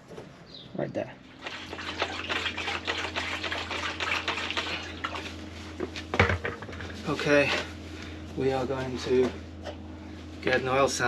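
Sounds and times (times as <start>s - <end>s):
steady low hum: 0.0s - 11.0s
oil gurgling up a hose: 1.3s - 5.5s.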